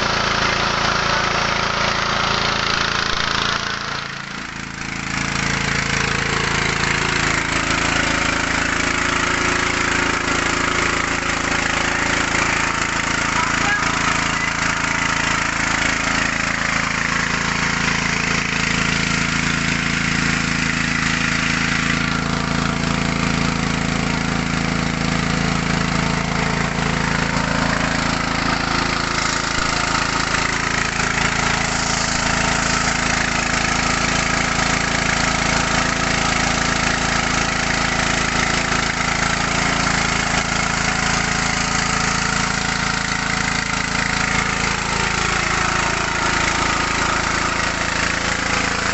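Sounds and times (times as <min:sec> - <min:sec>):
small petrol engine running: 0:00.0 - 0:48.9.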